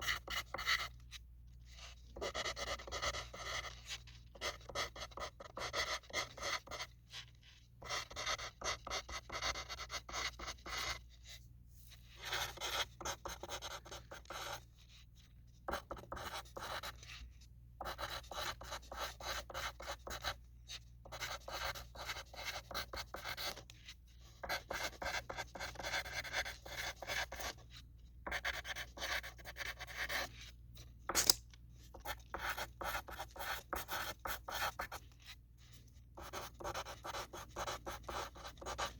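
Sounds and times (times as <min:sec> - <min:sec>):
pencil scratching on paper: 0:00.0 - 0:11.4, 0:12.0 - 0:38.9.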